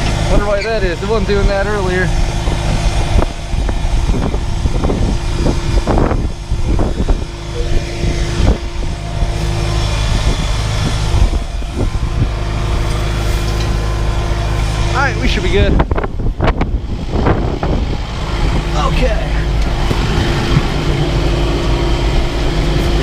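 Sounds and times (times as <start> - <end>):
tractor engine running: 0.0 - 23.0
knocks and clanks: 19.5 - 23.0.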